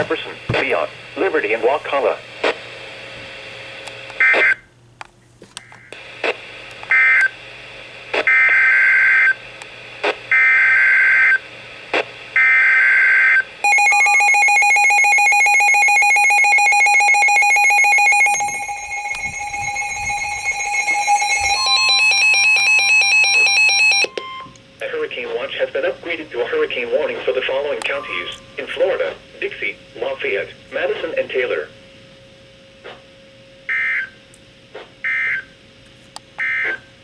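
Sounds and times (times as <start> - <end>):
higher steady alarm tone: 13.6 - 24.6, 27.8 - 29.0
steady harsh alert tone: 17.1 - 23.6.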